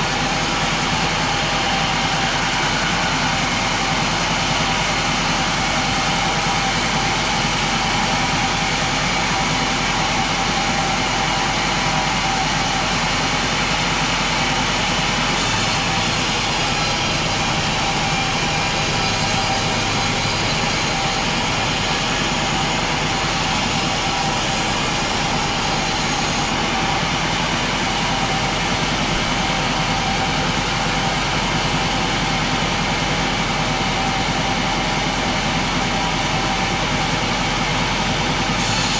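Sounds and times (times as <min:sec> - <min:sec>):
engine-driven saw cutting log: 0:00.0 - 0:38.9.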